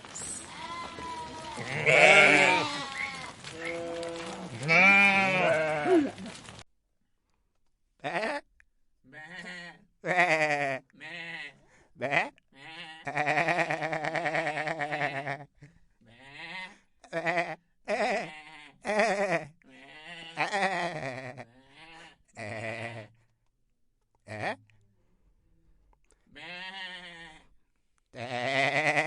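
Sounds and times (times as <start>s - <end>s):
goats bleating: 0.4s - 6.4s, 8.0s - 8.4s, 9.1s - 15.5s, 16.1s - 23.1s, 26.3s - 27.5s, 28.2s - 29.0s.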